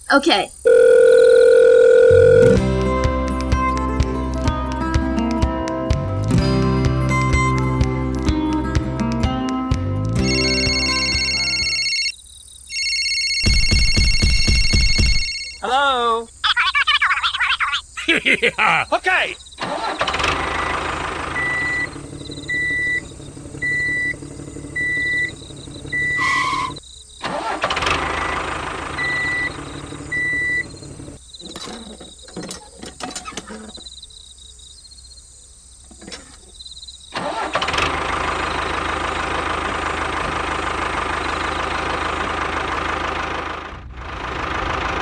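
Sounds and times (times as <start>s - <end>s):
high beeps: 0.7s - 2.6s, 12.7s - 15.9s
vehicle engine running: 19.6s - 26.8s, 27.4s - 31.2s, 37.2s - 45.0s.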